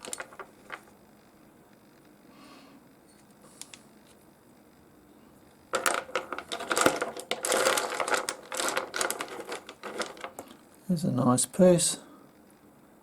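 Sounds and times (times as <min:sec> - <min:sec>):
stones clinking and clattering: 0:00.0 - 0:00.9, 0:05.7 - 0:10.6.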